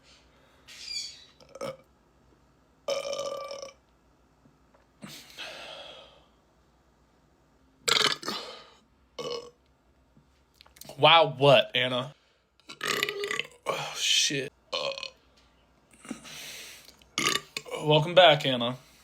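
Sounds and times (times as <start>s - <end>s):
person burping: 1.4s - 1.9s, 2.9s - 3.8s, 7.9s - 9.6s, 12.6s - 14.0s, 14.7s - 15.2s, 17.2s - 17.9s.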